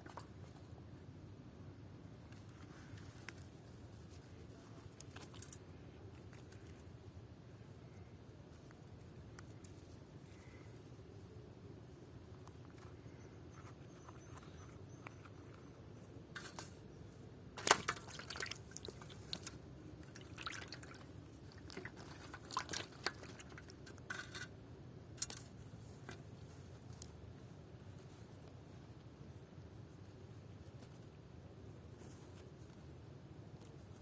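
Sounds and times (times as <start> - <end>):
low steady background noise: 0.0 - 34.0
water splashes and drips: 17.6 - 23.9.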